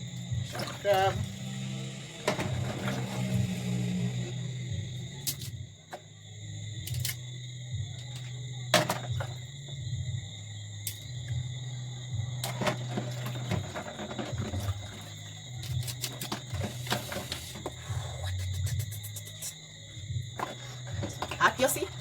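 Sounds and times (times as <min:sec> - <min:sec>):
low hum: 0:00.0 - 0:06.7
insects chirring: 0:00.0 - 0:22.0.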